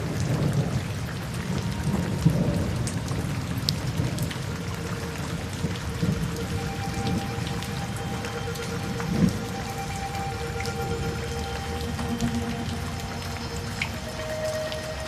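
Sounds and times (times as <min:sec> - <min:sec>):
low rumble of thunder: 0:00.0 - 0:07.7
raindrops ticking: 0:00.0 - 0:15.0
steady rain: 0:00.0 - 0:15.0.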